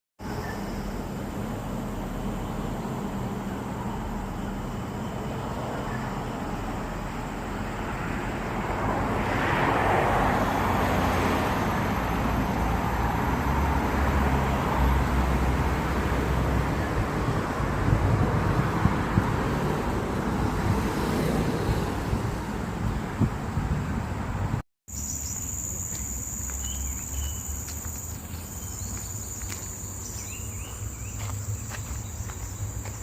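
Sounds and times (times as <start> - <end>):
road traffic: 0.2 - 33.0
vehicle passing: 0.9 - 24.6.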